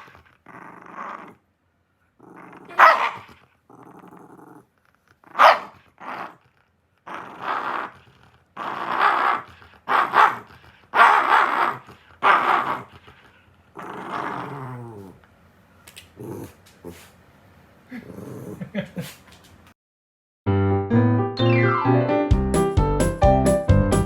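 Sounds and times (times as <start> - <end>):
dog growling: 0.0 - 1.4, 2.2 - 15.3, 16.1 - 17.1, 17.9 - 18.9
dog barking: 2.7 - 3.3, 5.4 - 5.8, 9.9 - 12.8.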